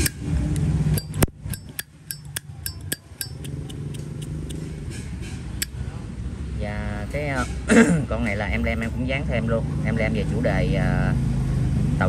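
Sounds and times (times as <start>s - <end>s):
metal lighter clicking: 0.0s - 0.2s, 1.0s - 4.6s.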